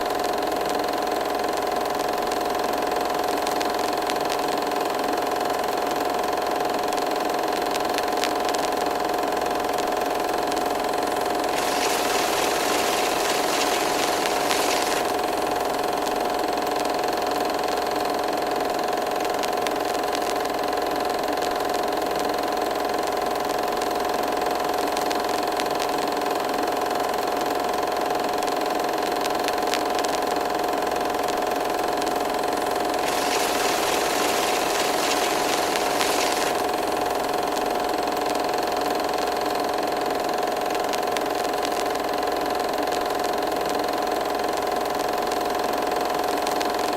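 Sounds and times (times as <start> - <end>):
hiss: 11.5 - 15.2, 33.0 - 36.7.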